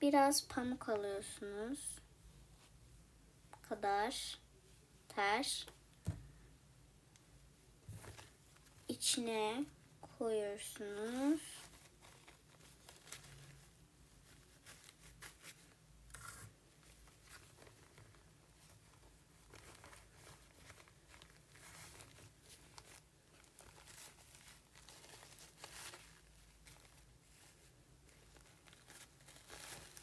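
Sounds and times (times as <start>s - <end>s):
paper napkin rustling and crinkling: 10.5s - 30.0s.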